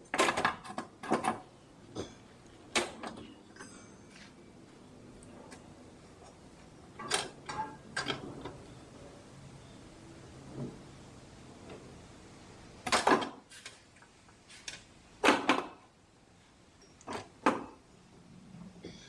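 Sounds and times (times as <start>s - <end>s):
tools and parts knocking and clattering: 0.0s - 4.3s, 6.2s - 8.8s, 12.8s - 15.9s, 16.8s - 17.8s.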